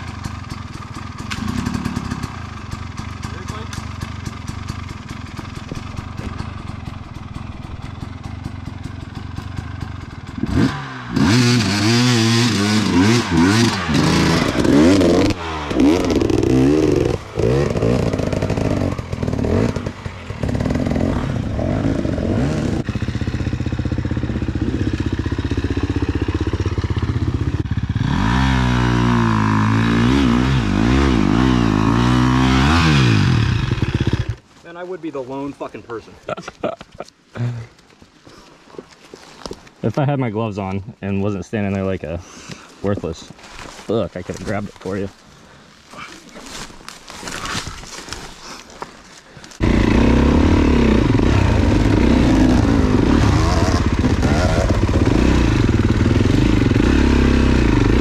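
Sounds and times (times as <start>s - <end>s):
dirt bike engine revving: 0.0s - 34.4s, 49.6s - 58.0s.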